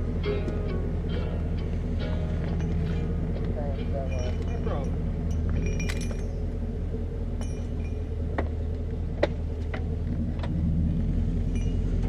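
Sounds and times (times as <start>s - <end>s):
engine idling: 0.0s - 12.0s
light metallic clinks: 2.4s - 6.6s, 7.3s - 8.2s, 11.4s - 12.0s.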